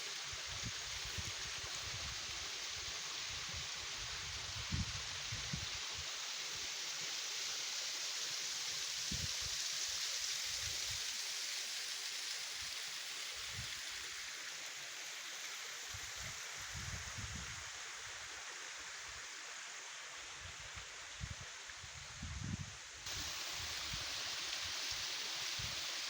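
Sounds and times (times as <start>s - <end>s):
waterfall rushing: 23.1s - 26.0s.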